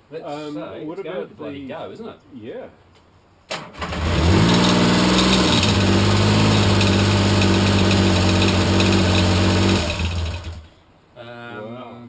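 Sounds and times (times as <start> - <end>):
motorcycle engine running: 4.0 - 10.7.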